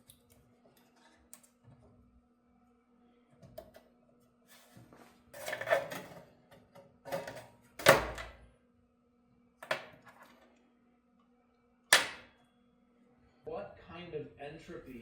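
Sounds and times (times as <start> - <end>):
sheet metal clanks and scrapes: 5.4 - 6.3.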